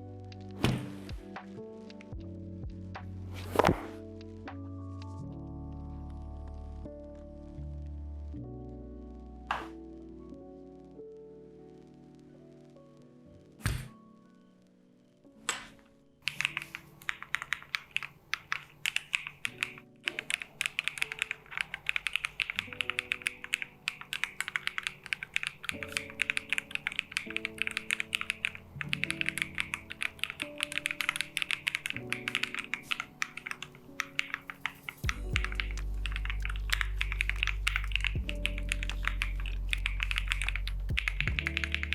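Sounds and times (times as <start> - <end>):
mechanical keyboard typing: 16.2 - 41.9.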